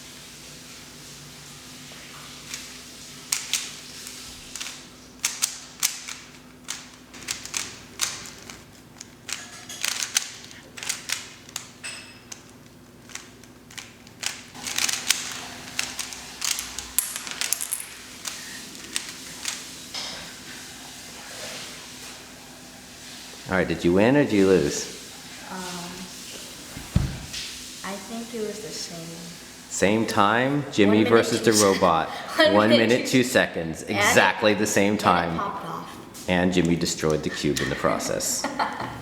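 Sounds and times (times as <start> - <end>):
rubik's cube clicking: 4.5 - 11.7, 13.0 - 16.6.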